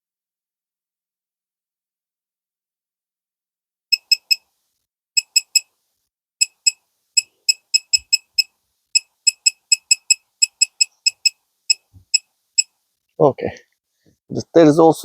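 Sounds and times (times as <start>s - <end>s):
short high beeps: 3.9s - 4.4s, 5.2s - 5.7s, 6.4s - 12.7s.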